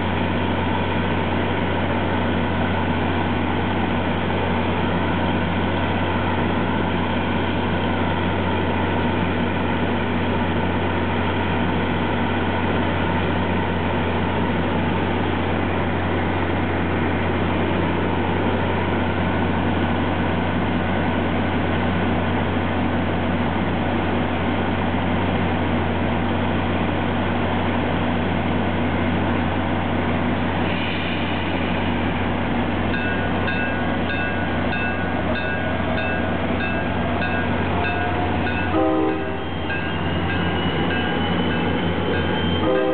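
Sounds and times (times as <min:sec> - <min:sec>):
diesel locomotive engine humming: 0:00.0 - 0:42.9
bell ringing: 0:33.0 - 0:42.9.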